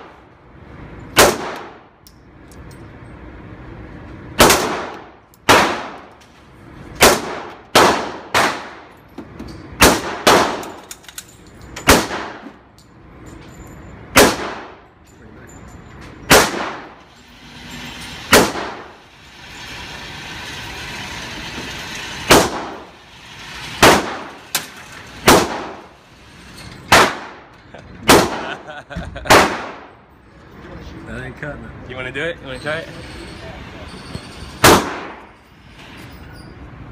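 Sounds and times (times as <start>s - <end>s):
pistol shots: 1.2s - 1.8s, 4.4s - 6.1s, 7.0s - 8.9s, 9.8s - 10.8s, 11.9s - 12.4s, 14.2s - 14.8s, 16.3s - 17.0s, 18.3s - 18.9s, 22.3s - 22.8s, 23.8s - 24.3s, 25.2s - 25.8s, 26.9s - 28.6s, 29.3s - 29.9s, 34.6s - 35.2s.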